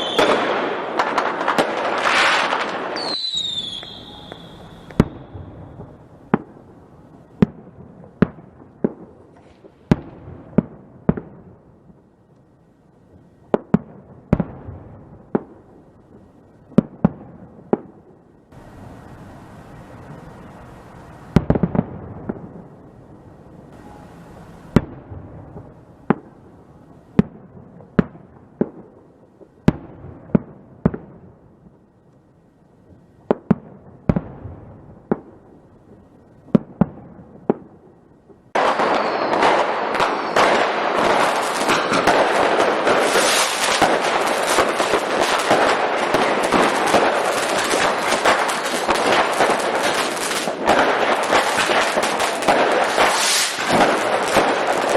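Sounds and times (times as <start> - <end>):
fireworks bangs and crackling: 0.0 - 12.2, 13.1 - 31.9, 32.8 - 54.9.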